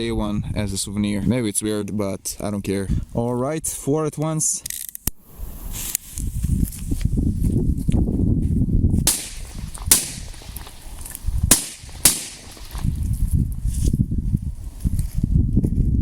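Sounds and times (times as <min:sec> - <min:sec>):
firecrackers cracking: 0:09.1 - 0:13.1.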